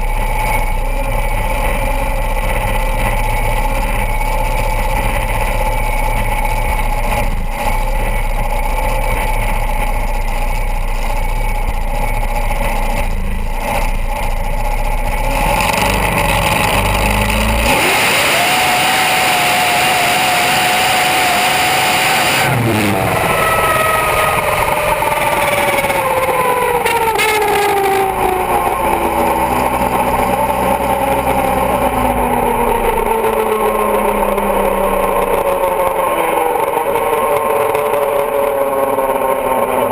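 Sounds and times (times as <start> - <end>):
dragster engine at full throttle: 0.0 - 39.9
falling whines: 15.6 - 39.9.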